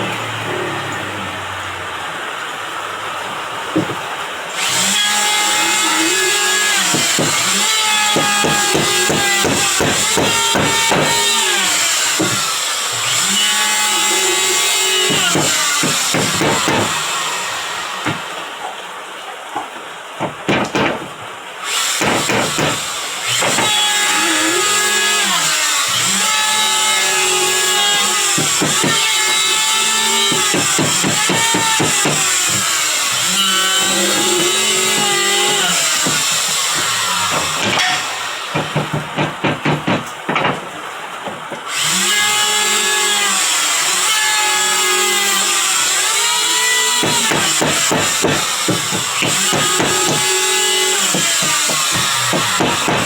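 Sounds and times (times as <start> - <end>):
power tool working wood: 0.0 - 19.2, 21.6 - 40.5, 41.2 - 53.0
sharp knocks: 6.7 - 13.2, 15.0 - 17.1, 20.2 - 26.2, 26.9 - 41.9, 46.9 - 53.0.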